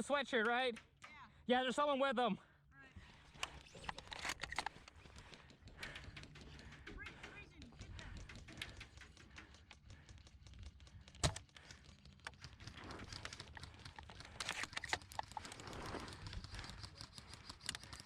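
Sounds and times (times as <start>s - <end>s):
rustling movement: 11.6s - 18.0s.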